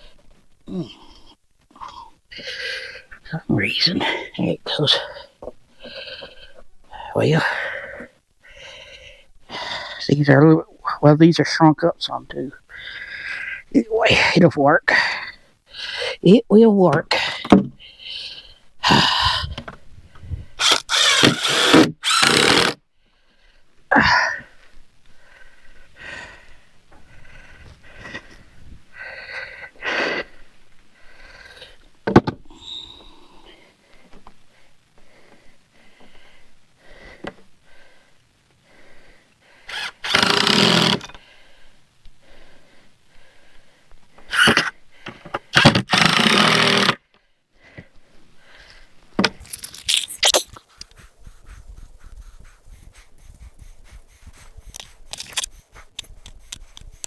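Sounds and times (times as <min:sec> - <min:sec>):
power drill driving screws: 0:20.6 - 0:22.8, 0:39.7 - 0:41.1, 0:45.6 - 0:47.0.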